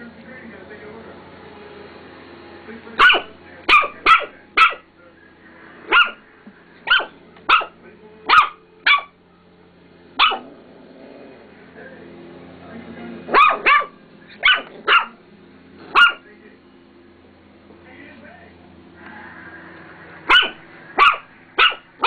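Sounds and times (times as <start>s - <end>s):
puppy barking: 3.0s - 4.9s, 5.9s - 9.2s, 10.2s - 10.6s, 13.3s - 15.2s, 15.9s - 16.3s, 20.3s - 22.0s.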